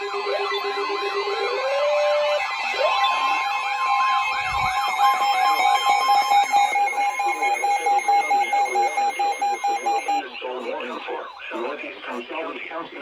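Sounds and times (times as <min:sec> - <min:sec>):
warbling siren-like tone: 0:00.0 - 0:11.7
steady tone: 0:00.0 - 0:12.2
higher steady tone: 0:02.9 - 0:11.7.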